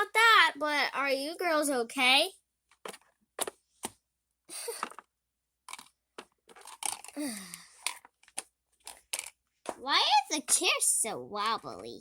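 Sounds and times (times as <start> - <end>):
plastic toys clicking and knocking: 2.7 - 4.0, 4.7 - 11.9.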